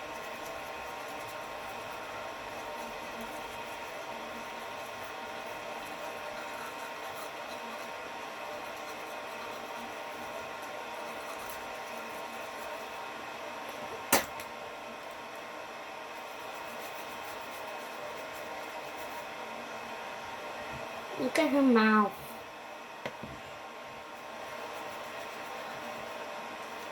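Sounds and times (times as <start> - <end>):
background hum with fixed tones: 0.0 - 26.9.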